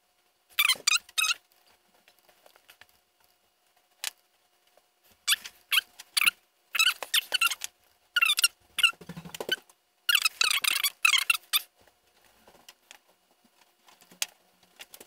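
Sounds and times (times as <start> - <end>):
small animal squeaking: 0.6 - 1.4, 5.2 - 11.7.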